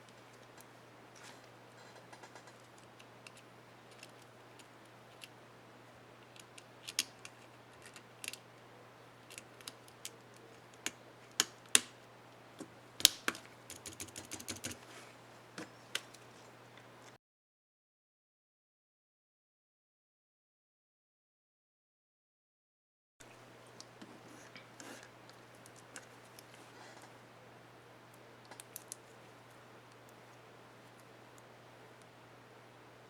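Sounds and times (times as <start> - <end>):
faint steady hum: 0.0 - 17.2, 23.2 - 33.0
laptop keys clicking: 9.3 - 11.9, 13.0 - 14.8.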